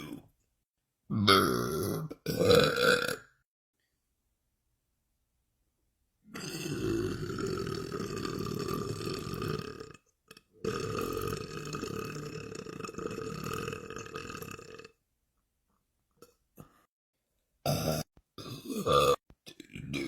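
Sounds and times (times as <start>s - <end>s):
man belching: 1.1s - 3.3s, 6.3s - 10.0s, 10.6s - 14.9s, 17.7s - 20.0s.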